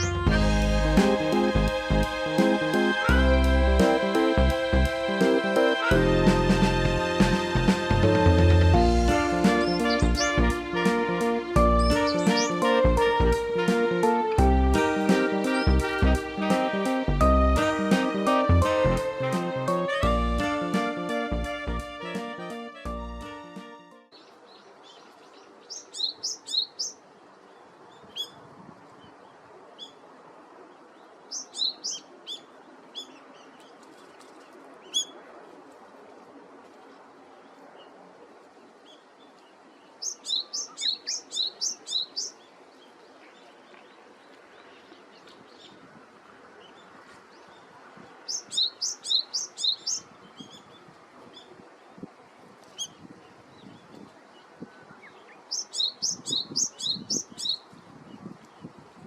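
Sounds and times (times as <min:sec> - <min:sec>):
bird singing repeated notes: 0:00.0 - 0:01.6, 0:09.1 - 0:10.9, 0:11.8 - 0:14.2, 0:55.5 - 0:57.6.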